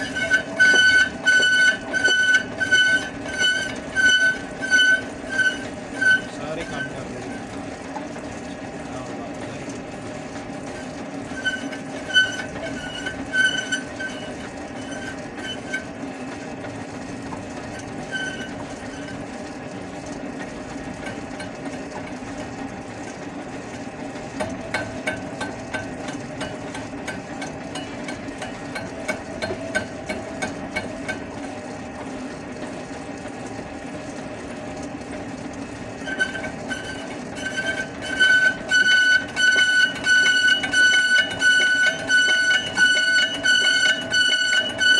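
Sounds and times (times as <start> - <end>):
high-pitched squeals: 0.0 - 7.0, 11.3 - 15.9, 18.1 - 19.2
lathe humming: 0.0 - 31.9, 33.1 - 44.9.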